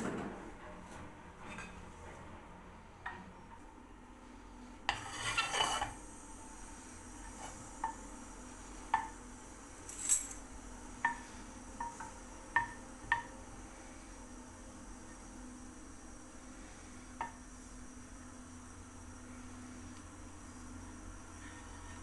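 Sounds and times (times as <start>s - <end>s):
utensils clinking against dishes: 9.9s - 10.4s.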